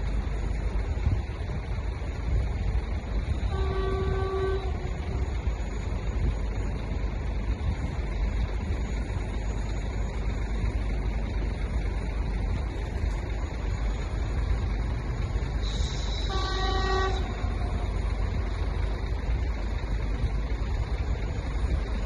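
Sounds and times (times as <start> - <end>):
road traffic rumble: 0.0 - 22.0
wind: 0.0 - 22.0
car horn toot: 3.5 - 5.0, 16.1 - 17.6.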